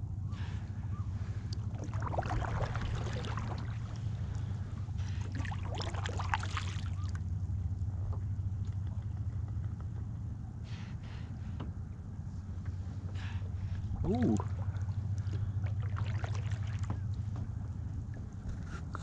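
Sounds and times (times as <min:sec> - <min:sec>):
steady low hum: 0:00.0 - 0:19.0
water splashing at a kayak: 0:01.2 - 0:07.4, 0:13.6 - 0:17.6.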